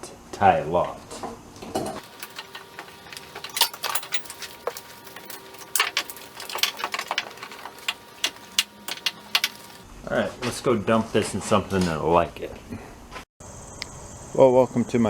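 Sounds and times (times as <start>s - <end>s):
clicks knocks and rattles: 2.0s - 9.8s.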